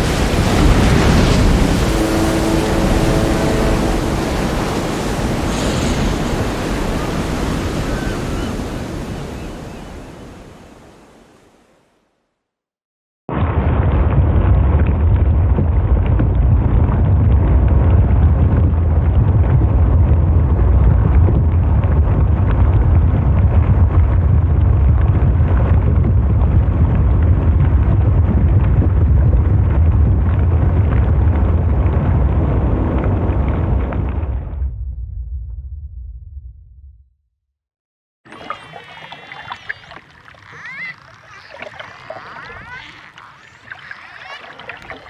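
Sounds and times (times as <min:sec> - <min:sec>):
wind on microphone: 0:00.0 - 0:11.2, 0:14.0 - 0:36.2
heavy surf rumbling: 0:00.0 - 0:11.5.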